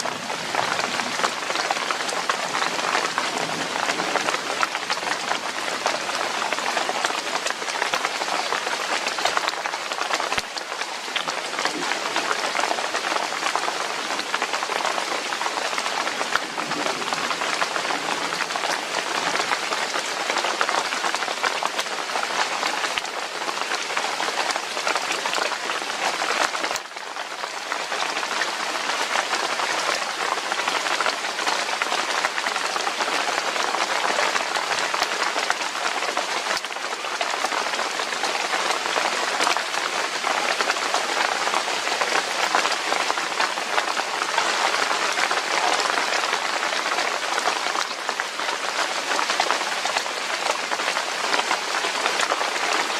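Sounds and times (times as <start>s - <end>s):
heavy rain falling: 0.0s - 52.9s.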